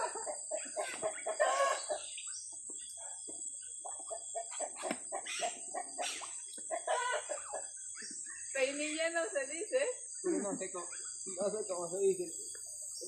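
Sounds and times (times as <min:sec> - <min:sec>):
chickens clucking: 0:00.0 - 0:08.5.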